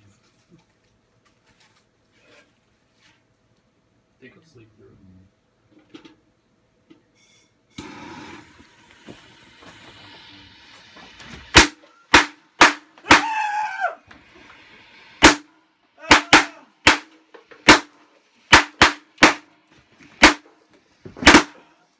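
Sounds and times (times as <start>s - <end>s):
firecrackers banging: 11.4s - 13.5s, 15.2s - 19.5s, 20.2s - 20.6s, 21.2s - 21.7s
person crying out: 13.0s - 14.0s, 16.0s - 16.8s.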